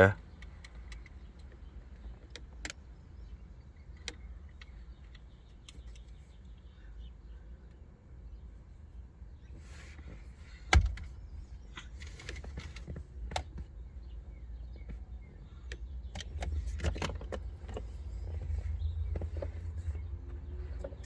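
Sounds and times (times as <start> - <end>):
clicks and knocks in car cabin: 0.0 - 6.4, 9.5 - 21.0
low steady rumble: 15.2 - 21.0.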